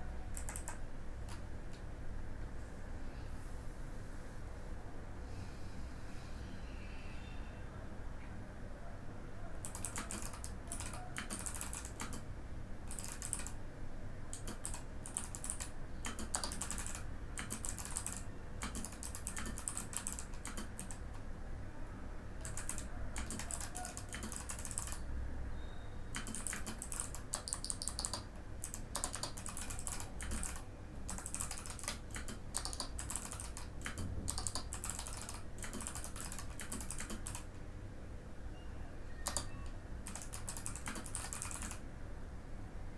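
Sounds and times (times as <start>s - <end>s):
mechanical keyboard typing: 0.3s - 1.4s, 9.6s - 13.6s, 14.3s - 21.2s, 22.4s - 25.0s, 26.1s - 37.5s, 39.2s - 41.8s.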